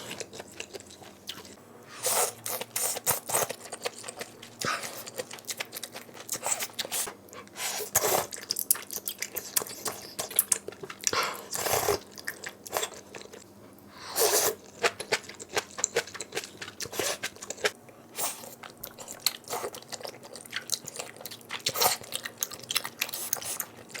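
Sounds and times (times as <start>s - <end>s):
person chewing and crunching food: 0.0s - 24.0s.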